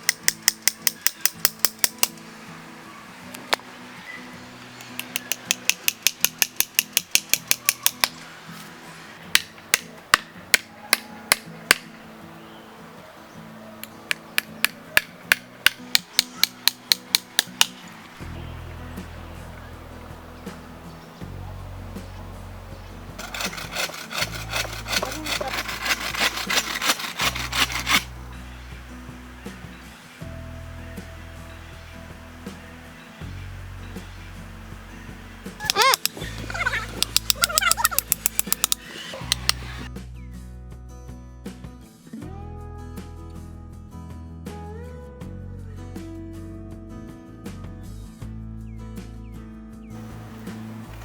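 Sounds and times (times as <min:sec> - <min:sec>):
hammer striking wood: 0:14.4 - 0:17.8
hand saw cutting wood: 0:23.2 - 0:28.2, 0:35.6 - 0:39.9.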